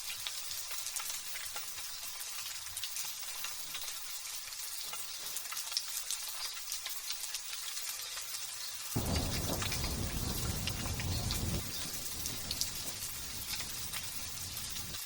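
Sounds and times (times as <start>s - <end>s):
light drizzle hissing: 0.0s - 15.0s
raindrop ticks: 8.9s - 15.0s.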